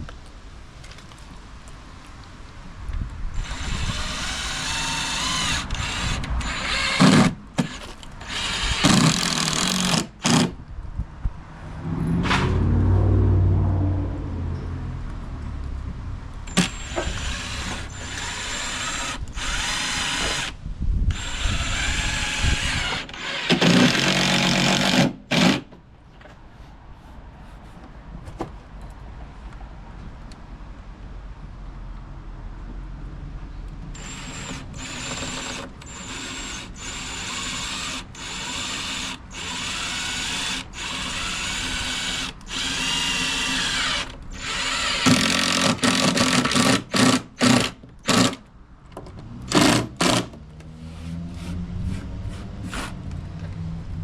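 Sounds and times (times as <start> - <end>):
power drill driving screws: 3.4 - 10.5, 16.5 - 25.7, 34.0 - 48.4, 49.5 - 50.4
low rumble: 10.9 - 16.5.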